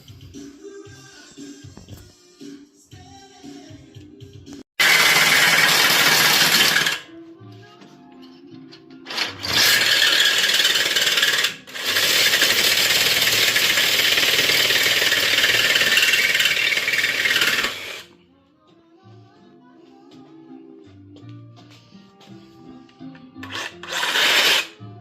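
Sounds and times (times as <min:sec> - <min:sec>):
power tool grinding metal: 0:04.8 - 0:07.1, 0:09.1 - 0:18.1, 0:23.4 - 0:24.8
faint background music: 0:07.0 - 0:09.5, 0:17.9 - 0:25.0.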